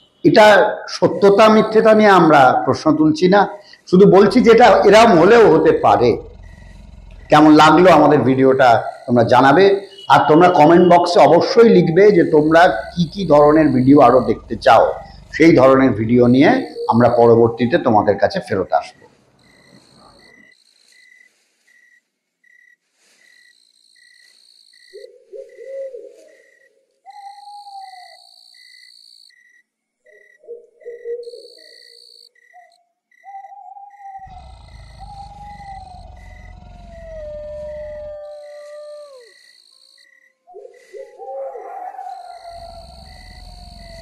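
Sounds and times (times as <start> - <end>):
cricket chirping: 0.0 - 0.4, 3.5 - 44.0
owl hooting: 3.6 - 21.2, 24.7 - 29.4, 30.1 - 44.0
faint high insect trilling: 3.6 - 25.1, 26.4 - 44.0
wavering yelps: 4.2 - 20.5, 32.6 - 39.6, 40.5 - 44.0
low rumbling drone: 4.3 - 8.9, 12.2 - 16.8, 34.2 - 39.3, 42.4 - 44.0
long howl sliding down: 34.2 - 39.4, 41.2 - 44.0.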